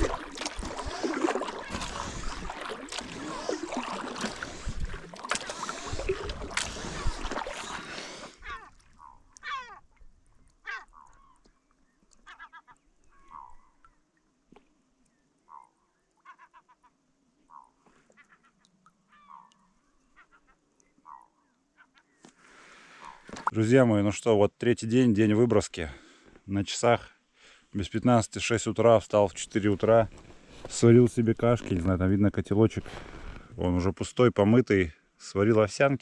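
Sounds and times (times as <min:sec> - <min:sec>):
water splashing: 0:00.0 - 0:10.0, 0:23.0 - 0:23.6, 0:29.3 - 0:33.6
birds calling: 0:00.0 - 0:14.0, 0:15.1 - 0:22.3
wind on microphone: 0:04.3 - 0:05.1.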